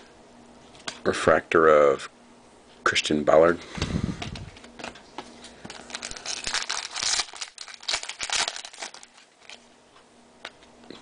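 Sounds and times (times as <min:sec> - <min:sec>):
foil wrapper crinkling and tearing: 0:05.7 - 0:09.7.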